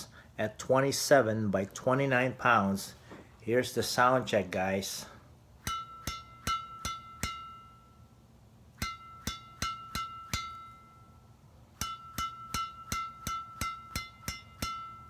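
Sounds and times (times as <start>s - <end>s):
badminton racket strings pinging: 5.6s - 8.0s, 8.7s - 15.0s.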